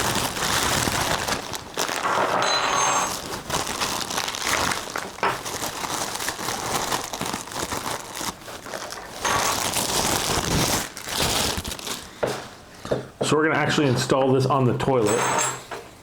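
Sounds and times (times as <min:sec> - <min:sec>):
plastic packaging crinkling: 0:00.0 - 0:12.2.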